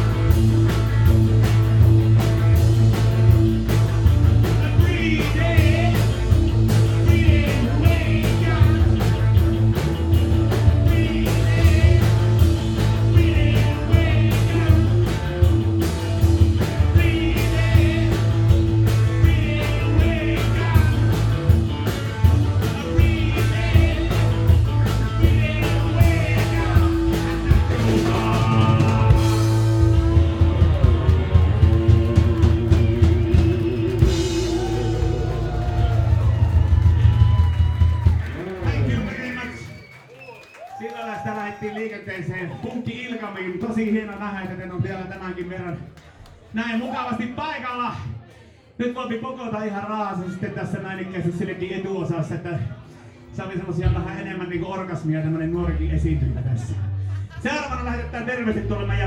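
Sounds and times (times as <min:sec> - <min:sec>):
electric guitar: 0:00.0 - 0:39.6
drums: 0:00.0 - 0:47.2, 0:49.8 - 0:59.0
bass: 0:00.0 - 0:59.0
person singing: 0:04.4 - 0:09.1, 0:10.6 - 0:15.0, 0:16.8 - 0:21.3, 0:22.6 - 0:35.8.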